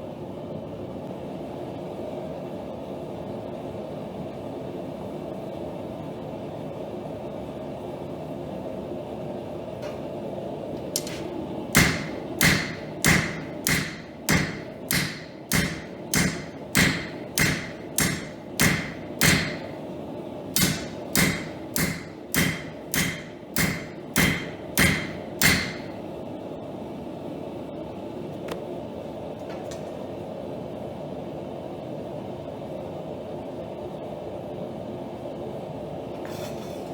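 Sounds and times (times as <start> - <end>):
hammer ringing on steel: 11.8 - 19.7, 20.6 - 25.9.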